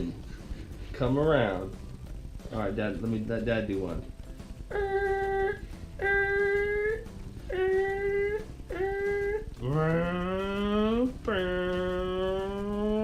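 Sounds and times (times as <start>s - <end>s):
person vocalizing playful sounds: 4.7s - 13.0s.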